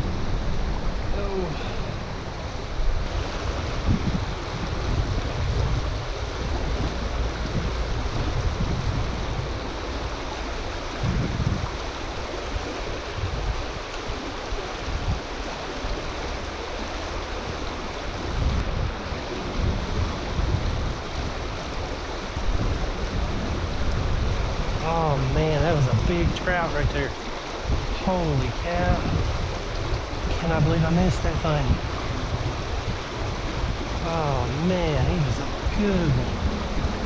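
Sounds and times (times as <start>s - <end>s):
river water running over rocks: 0.0s - 37.0s
wind buffeting microphone: 0.0s - 37.0s.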